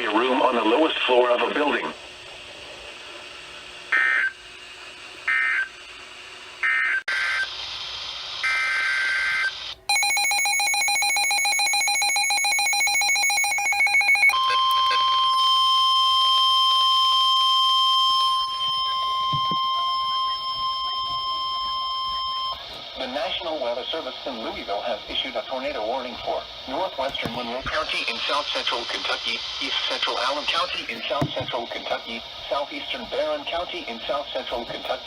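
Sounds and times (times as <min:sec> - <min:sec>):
rapidly pulsing electronic alarm: 0:03.9 - 0:04.4, 0:05.2 - 0:05.8, 0:06.6 - 0:07.5, 0:08.4 - 0:22.6
steady warning alarm tone: 0:08.4 - 0:22.6.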